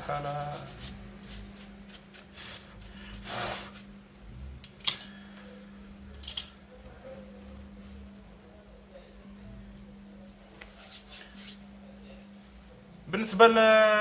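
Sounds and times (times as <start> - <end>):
steady low hum: 0.0 - 14.0
dry scrubbing strokes: 10.7 - 11.7.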